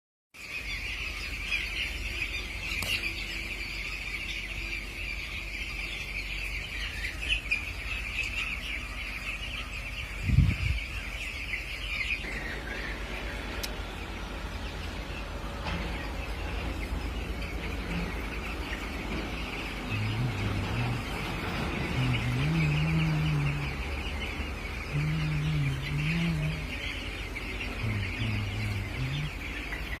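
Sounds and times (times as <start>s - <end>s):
chicks cheeping: 0.4s - 30.0s
short low-pitched tones: 24.8s - 26.8s.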